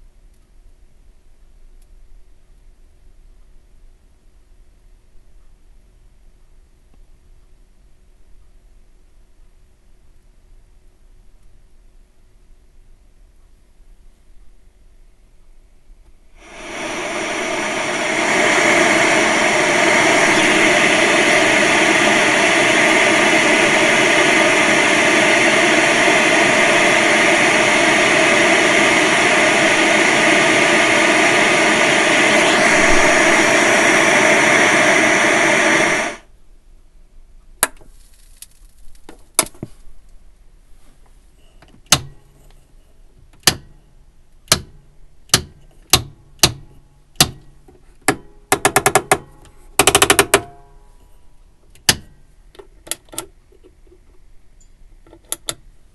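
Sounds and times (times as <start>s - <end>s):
television static hiss: 0.0s - 43.2s.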